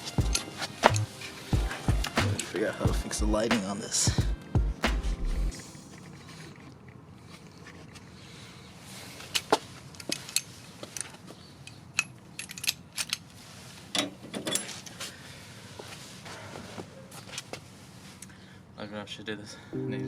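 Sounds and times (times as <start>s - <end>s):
small metal parts clinking: 12.0s - 13.2s.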